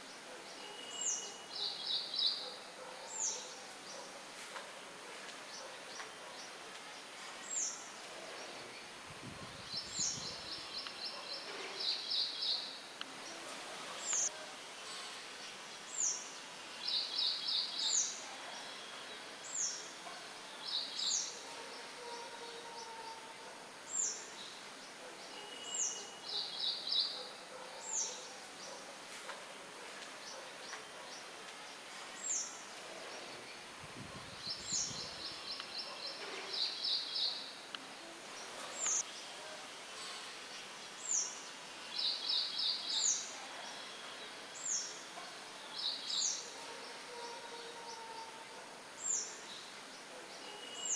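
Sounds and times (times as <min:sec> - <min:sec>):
songbirds chirping: 0:00.0 - 0:50.9
wind rustling leaves: 0:06.5 - 0:21.8, 0:28.4 - 0:48.0.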